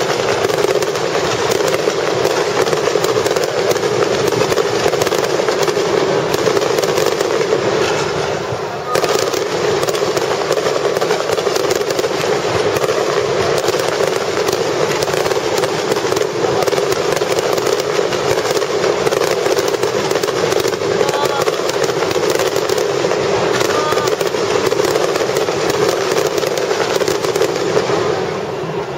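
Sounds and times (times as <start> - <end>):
fireworks crackling: 0.0 - 28.9
faint voices: 7.2 - 28.9.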